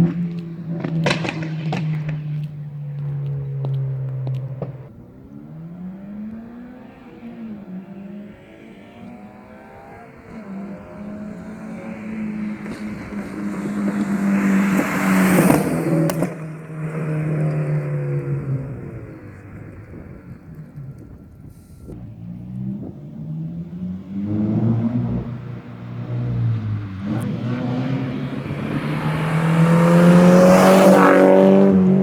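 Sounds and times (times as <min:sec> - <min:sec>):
car engine revving: 0:00.0 - 0:32.0.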